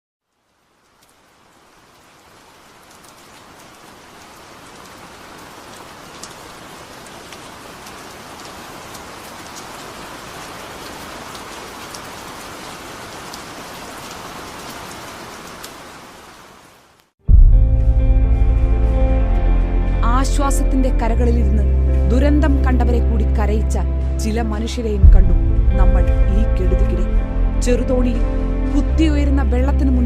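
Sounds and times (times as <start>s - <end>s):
heavy rain falling: 0.2s - 17.1s.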